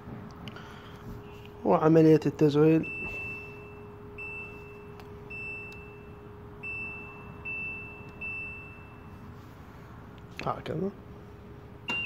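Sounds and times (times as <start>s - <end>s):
faint steady hum: 0.0s - 12.0s
high control panel beeps: 2.8s - 9.3s.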